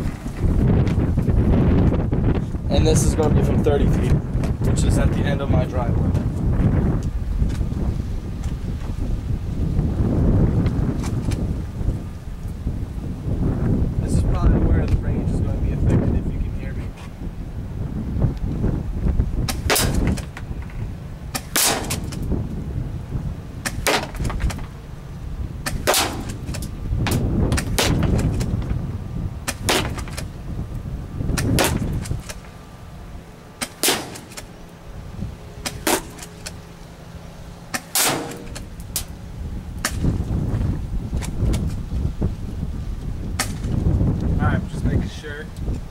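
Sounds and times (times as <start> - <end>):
wind buffeting microphone: 0.0 - 45.9
airsoft shotgun shots cracking: 19.5 - 20.3, 21.3 - 22.2, 23.6 - 24.3, 25.6 - 28.2, 29.5 - 30.2, 31.4 - 32.4, 33.6 - 34.5, 35.6 - 36.3, 37.7 - 38.7.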